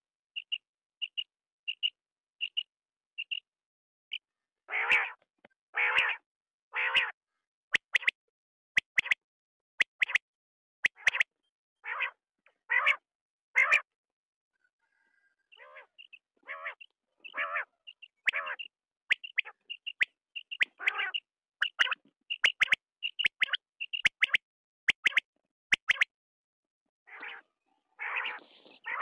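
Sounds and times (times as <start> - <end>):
quail calling: 4.7 - 5.2, 5.8 - 7.2, 10.8 - 13.9, 14.6 - 25.2, 27.1 - 29.0.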